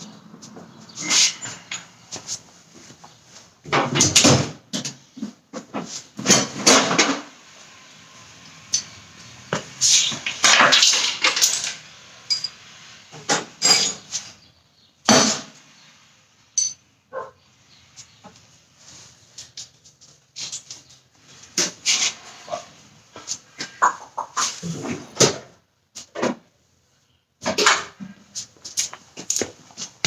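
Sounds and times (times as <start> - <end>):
metal parts clanking: 9.8 - 12.6, 13.6 - 14.1.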